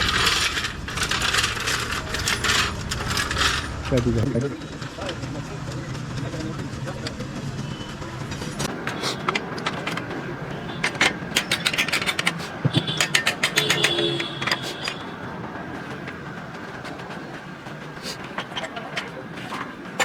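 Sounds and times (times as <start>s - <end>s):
sharp metal knocks and clanks: 0.0s - 15.2s
low engine rumble: 0.0s - 20.0s.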